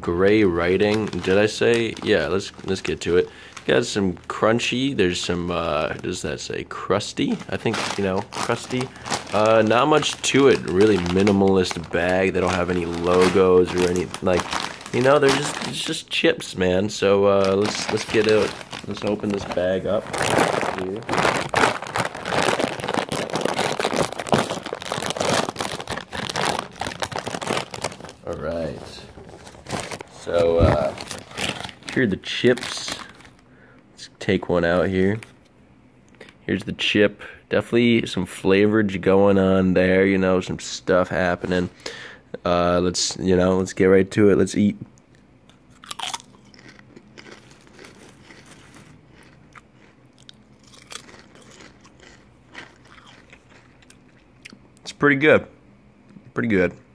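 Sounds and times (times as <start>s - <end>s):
chip bag crinkling: 0.2s - 4.0s, 7.1s - 33.4s, 45.7s - 54.2s
chewing with crackly crunching: 45.0s - 54.8s.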